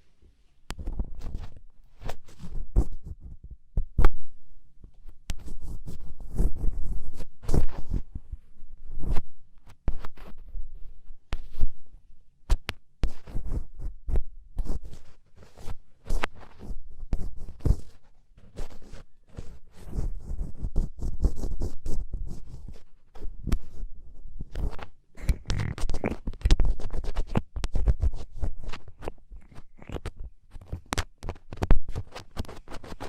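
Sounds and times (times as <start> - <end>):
ear pick scraping earwax: 12.5 - 33.0.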